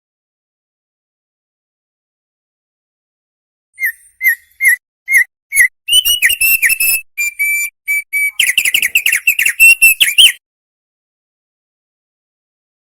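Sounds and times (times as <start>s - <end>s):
songbird whistled song: 3.8s - 10.4s.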